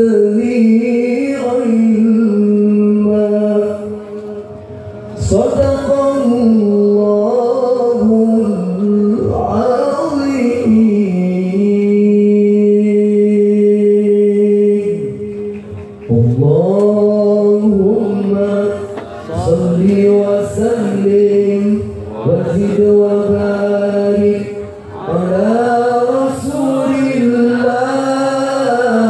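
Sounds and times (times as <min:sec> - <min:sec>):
man reciting melodically: 0:00.0 - 0:29.0.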